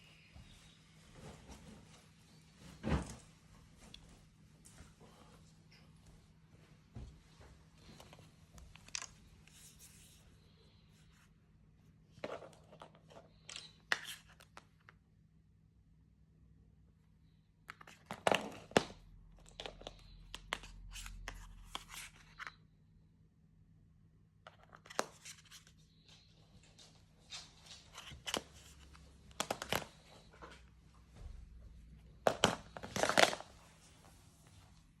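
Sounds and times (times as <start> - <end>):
rustling and clicking handling noises: 7.0 - 10.2, 24.5 - 30.8, 32.2 - 34.7.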